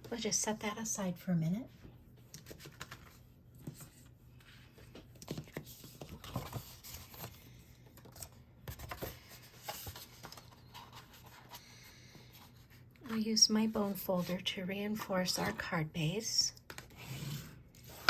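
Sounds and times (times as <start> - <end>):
paper rustling: 2.3 - 11.7.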